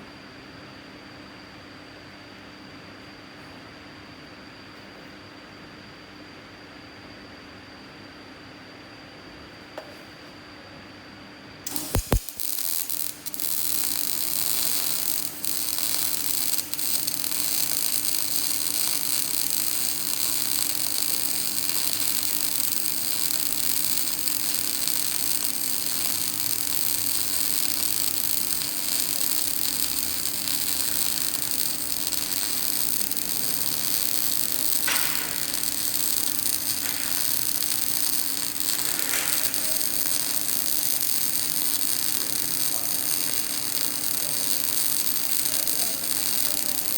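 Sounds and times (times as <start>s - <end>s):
welding hum: 11.6s - 46.9s
welding arc hissing crackle: 11.7s - 46.9s.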